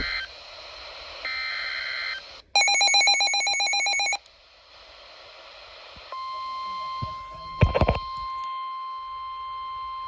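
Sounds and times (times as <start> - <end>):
warbling modem-like data tones: 0.0 - 0.3, 1.2 - 4.2.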